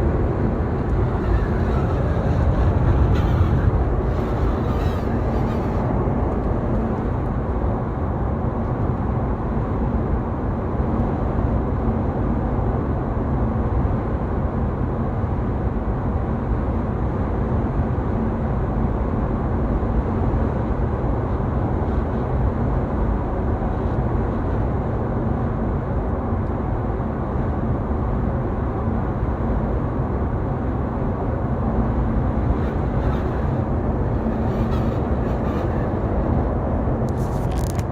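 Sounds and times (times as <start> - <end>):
low even whine: 0.0 - 11.9
road and wind noise in car: 0.0 - 37.9.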